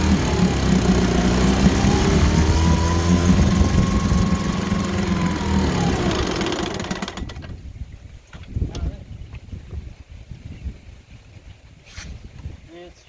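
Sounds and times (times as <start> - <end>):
outboard motor running: 0.0 - 7.6.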